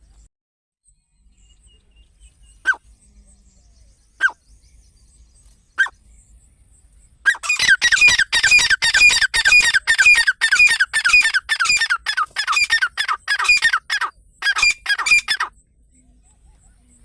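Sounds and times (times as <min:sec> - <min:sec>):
partridge calling harsh repeated notes: 0:07.2 - 0:15.6.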